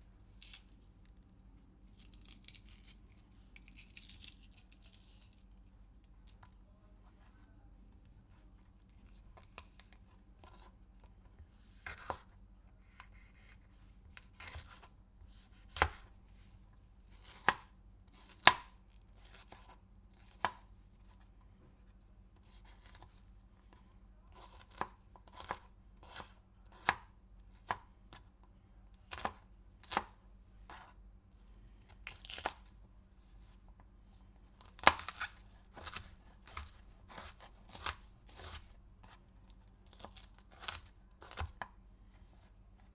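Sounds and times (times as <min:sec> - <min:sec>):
knife slicing on cutting board: 0:34.8 - 0:39.2.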